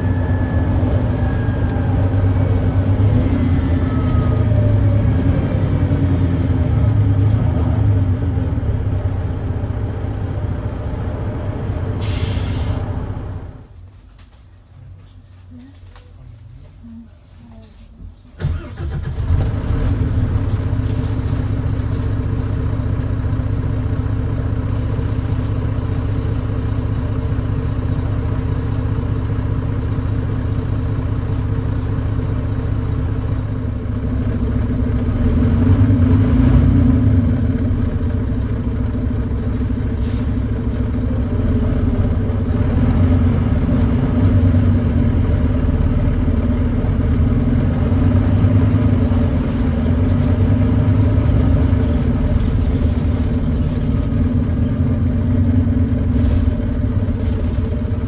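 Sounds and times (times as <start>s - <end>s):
bus diesel engine running: 0.0s - 58.0s.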